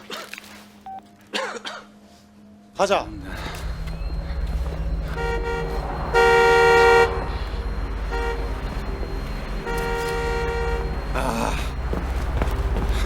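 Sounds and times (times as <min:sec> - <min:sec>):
low engine rumble: 0:03.0 - 0:13.0
car horn honking: 0:04.8 - 0:12.5.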